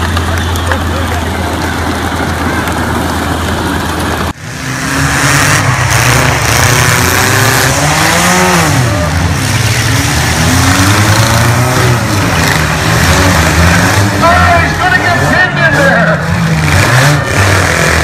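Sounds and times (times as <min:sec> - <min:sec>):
engine revving: 0:00.0 - 0:18.0
loud steady background noise: 0:00.0 - 0:18.0.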